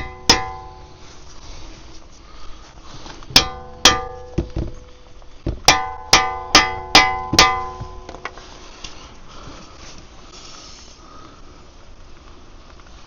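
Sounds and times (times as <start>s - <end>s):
hammer ringing on steel: 0.0s - 1.0s, 3.4s - 4.8s, 5.7s - 8.1s
dull hammer knocks: 3.4s - 4.8s, 5.4s - 8.0s.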